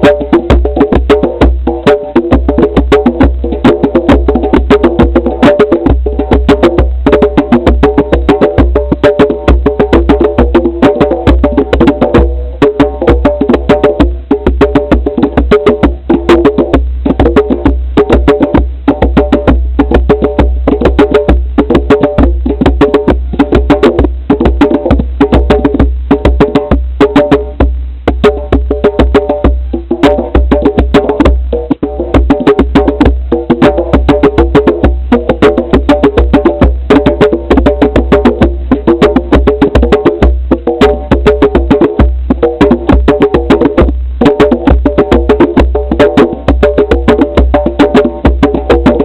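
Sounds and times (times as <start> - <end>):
fast percussion music: 0.0 - 49.0
distorted low rumble: 13.3 - 33.5.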